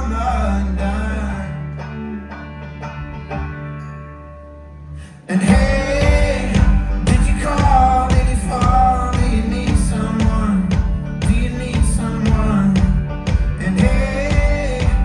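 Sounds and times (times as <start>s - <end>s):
live folk-rock band playing: 0.0s - 15.0s
strummed banjo: 0.0s - 15.0s
voices singing: 5.2s - 15.0s.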